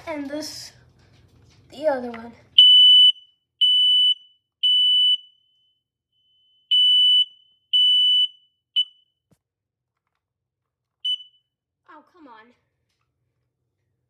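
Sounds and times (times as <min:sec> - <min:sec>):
smoke alarm beeping: 0:02.6 - 0:09.1, 0:11.0 - 0:11.5.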